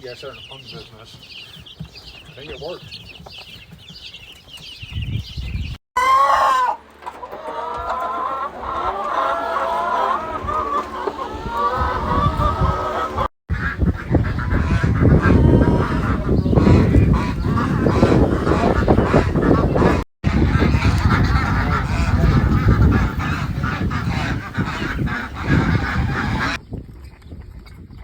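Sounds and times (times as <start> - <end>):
chickens clucking: 0.0 - 26.6
loud rising and falling chicken call: 6.0 - 13.7, 14.4 - 26.6.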